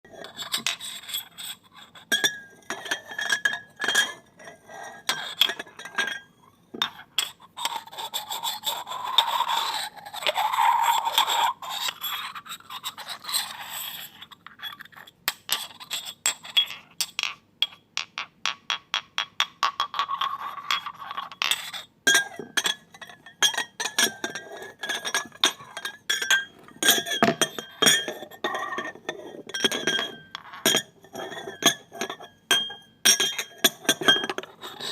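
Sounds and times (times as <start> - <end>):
glasses clinking together: 2.1 - 4.2, 22.1 - 34.9
glasses scraping together: 33.3 - 34.9.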